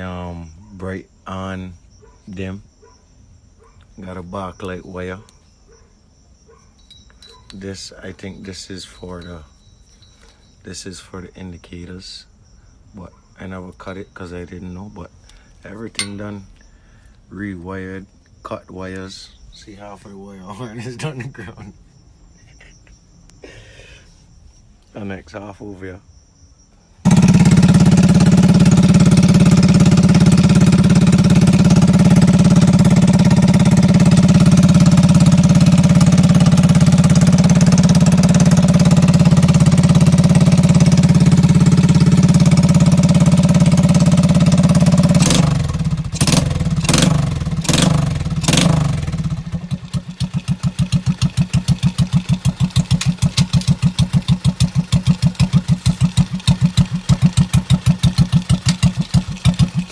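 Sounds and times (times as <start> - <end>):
motorized bike engine running: 27.0 - 59.9.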